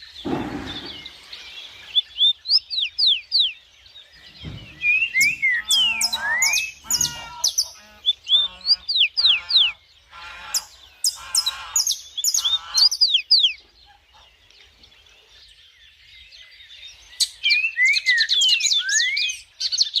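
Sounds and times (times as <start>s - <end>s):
birds calling and singing: 0.0s - 20.0s.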